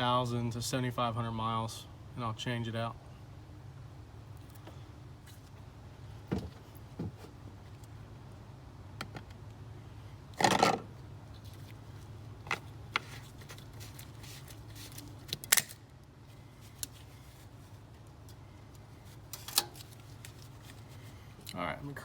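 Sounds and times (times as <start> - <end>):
low steady hum: 0.0 - 22.0.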